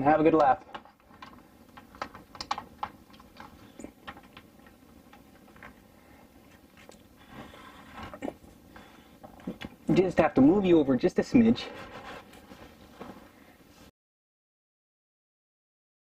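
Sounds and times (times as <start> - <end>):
small objects clicking and tapping: 0.3 - 5.8.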